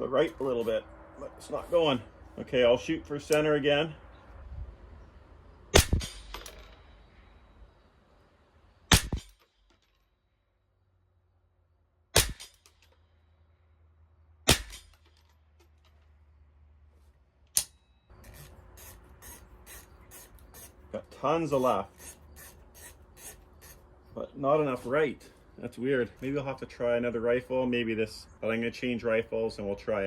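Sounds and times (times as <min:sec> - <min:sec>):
rifle shots: 0:05.7 - 0:06.6, 0:08.9 - 0:09.4, 0:12.2 - 0:12.6, 0:14.5 - 0:15.0
rubbing scraping noise: 0:18.1 - 0:23.8.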